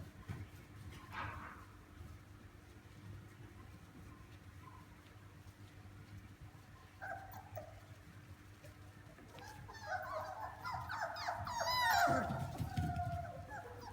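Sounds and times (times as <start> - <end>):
puppy whining and whimpering: 9.2 - 13.9.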